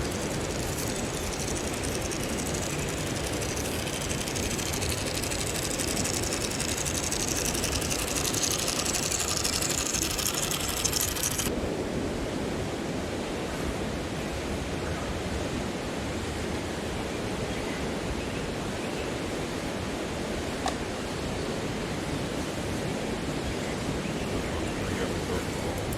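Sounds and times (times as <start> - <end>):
low outdoor noise: 0.0 - 11.5
toy truck motor whirring: 0.0 - 11.5, 24.7 - 25.9.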